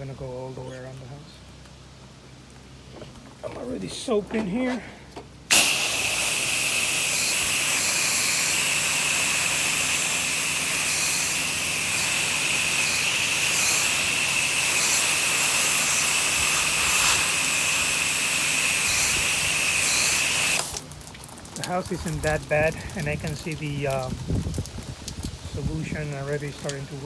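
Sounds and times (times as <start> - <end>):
pressure washer water jet hissing: 5.5 - 20.9.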